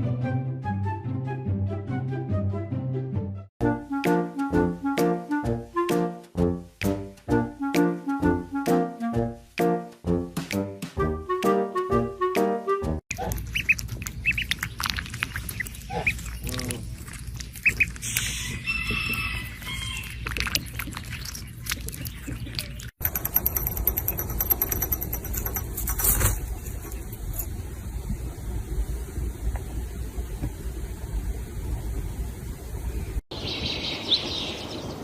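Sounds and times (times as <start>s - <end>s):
ducklings peeping: 13.1s - 22.9s.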